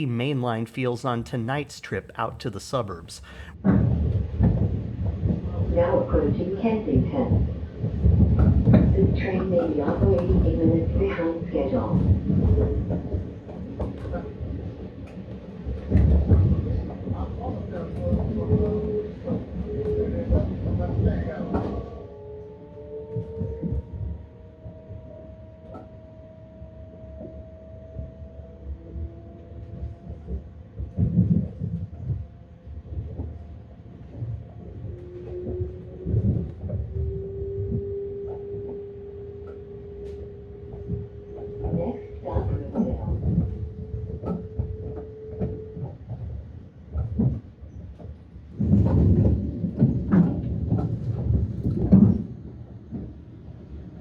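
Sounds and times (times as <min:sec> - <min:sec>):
train whine: 0:21.2 - 0:46.4.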